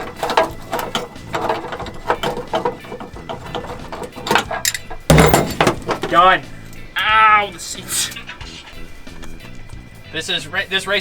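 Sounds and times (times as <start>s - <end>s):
ratchet wrench clicking: 4.3s - 5.1s.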